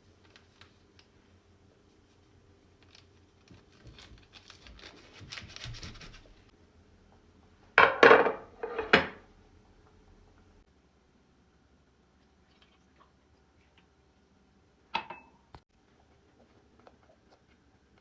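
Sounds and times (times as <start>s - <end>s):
objects rustling and scraping: 8.0s - 9.2s.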